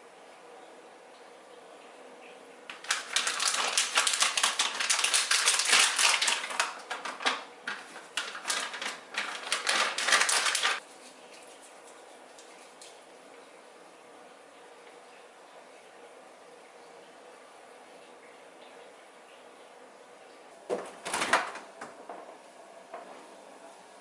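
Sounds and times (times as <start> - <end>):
rapid clatter of small clicks: 2.7 - 10.8.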